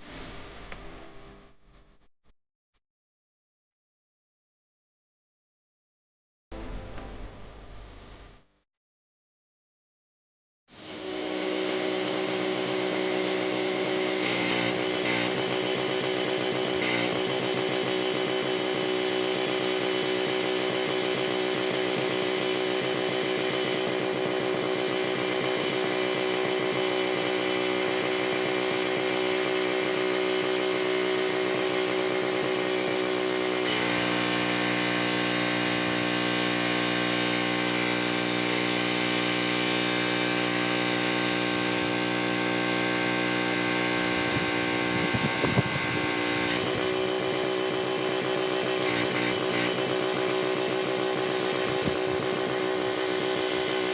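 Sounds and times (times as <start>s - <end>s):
pressure washer engine running: 14.5s - 53.9s.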